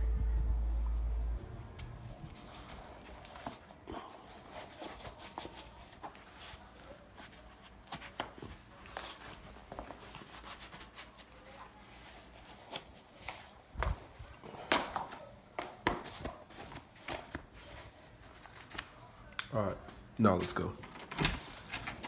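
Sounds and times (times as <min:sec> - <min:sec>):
footsteps: 0:00.0 - 0:10.9.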